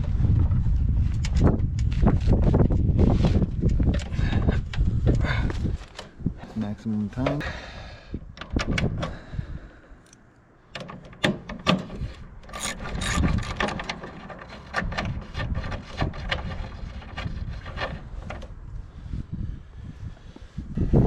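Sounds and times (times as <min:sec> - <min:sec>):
tools knocking and clicking: 0:10.0 - 0:15.5
stiff cable rubbing on fittings: 0:12.0 - 0:18.5.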